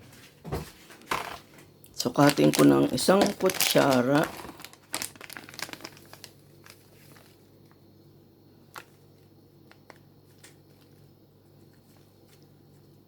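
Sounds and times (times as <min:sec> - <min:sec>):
low steady hum: 0:00.0 - 0:13.0
spoon and packet clicks and rustling: 0:02.0 - 0:07.4.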